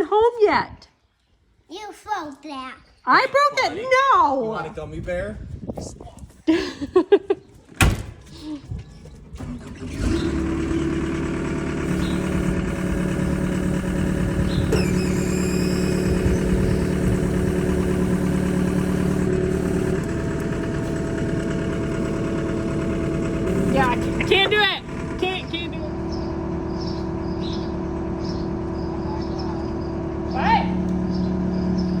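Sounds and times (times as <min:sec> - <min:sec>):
skid loader engine starting: 0:09.1 - 0:32.0.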